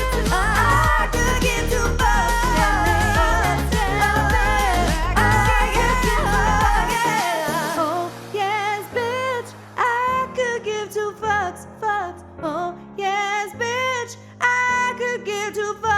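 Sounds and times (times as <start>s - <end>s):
sustained backing chords: 0.0s - 9.8s
woman singing with vibrato: 0.0s - 15.9s.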